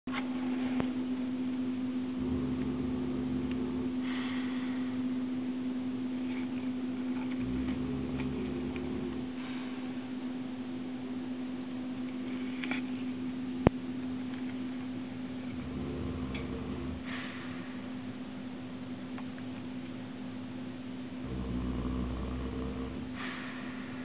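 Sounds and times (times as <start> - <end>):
steady electrical hum: 0.1 - 24.0
pet snoring: 2.1 - 4.8, 6.2 - 9.8, 15.4 - 17.6, 21.2 - 24.0.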